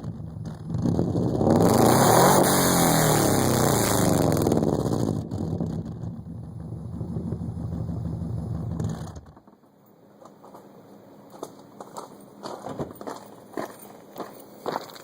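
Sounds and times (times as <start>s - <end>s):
car engine idling: 0.0s - 9.7s.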